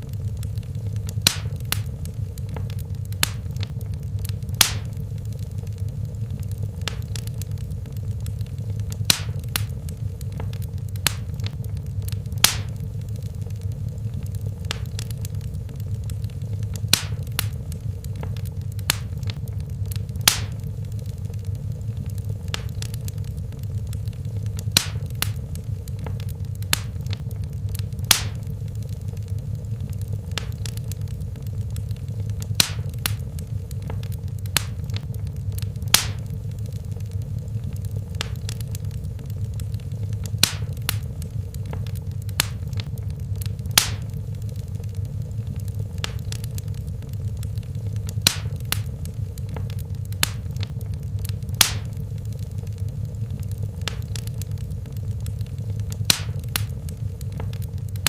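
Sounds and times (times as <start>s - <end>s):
fire crackles and pops: 0.0s - 58.0s
low rumble of flames: 0.0s - 58.0s.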